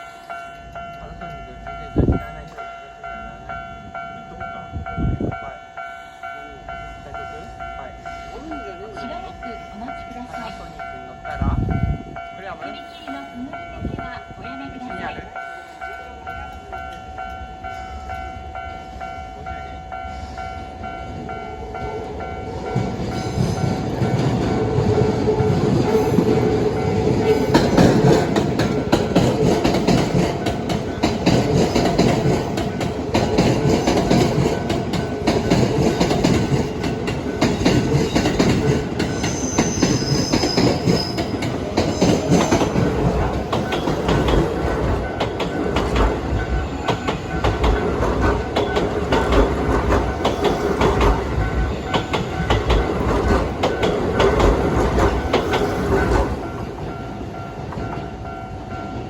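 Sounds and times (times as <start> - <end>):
electric train running past: 0.0 - 59.0
wheels clicking over rail joints: 22.5 - 58.2
high wheel squeal: 39.1 - 42.7.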